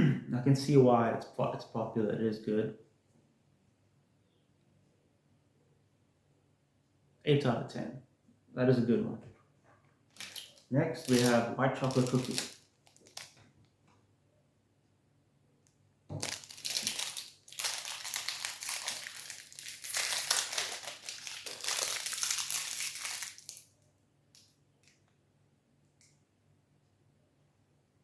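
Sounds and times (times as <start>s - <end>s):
plastic wrapper crinkling: 10.1s - 13.4s, 16.1s - 24.9s.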